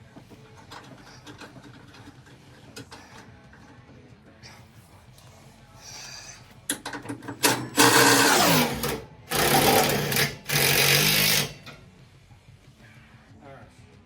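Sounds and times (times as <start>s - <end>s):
power tool motor running: 7.7s - 11.7s.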